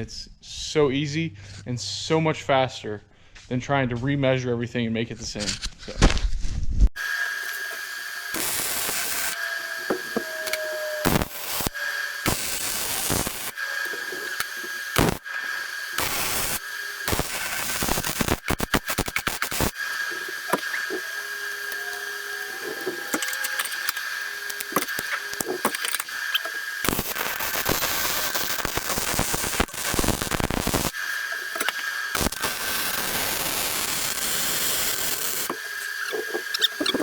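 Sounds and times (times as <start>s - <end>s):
arc welding crackle: 7.0s - 37.0s
steady high whine: 7.0s - 37.0s.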